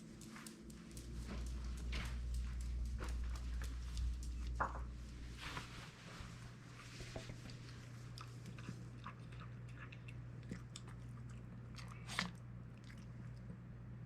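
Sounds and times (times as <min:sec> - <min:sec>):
steady low hum: 0:00.0 - 0:14.0
dog chewing wet food: 0:07.4 - 0:13.7.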